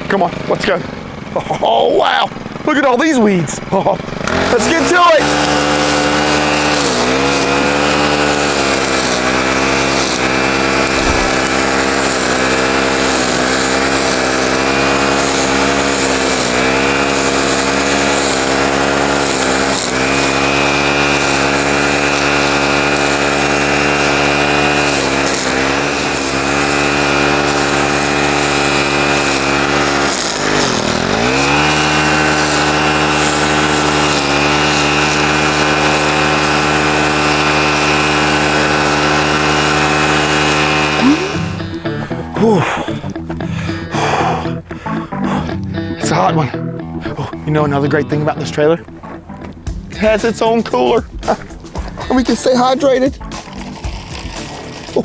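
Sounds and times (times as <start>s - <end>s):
string trimmer engine running: 0.0s - 45.0s, 49.6s - 55.0s.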